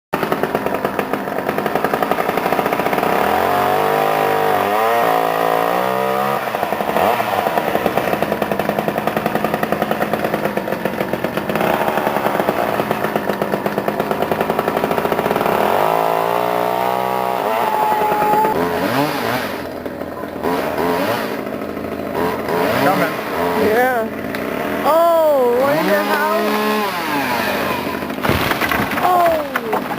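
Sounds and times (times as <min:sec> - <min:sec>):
chainsaw engine revving: 0:00.2 - 0:29.9.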